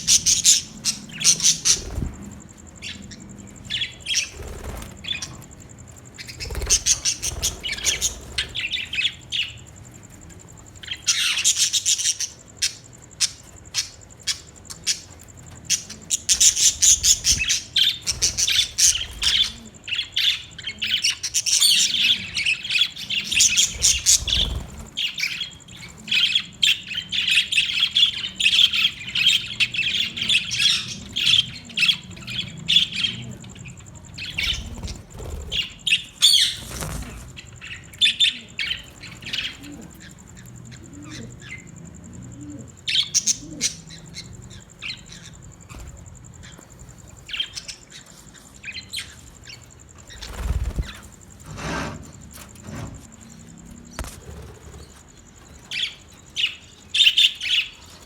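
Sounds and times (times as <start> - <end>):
budgerigars chattering: 0.0 - 9.8, 10.8 - 46.6.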